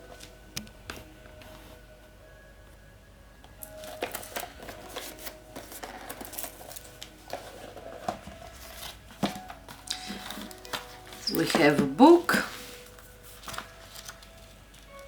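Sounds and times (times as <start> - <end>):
faint background music: 0.0 - 15.0
packaging rustling and crinkling: 3.6 - 15.0.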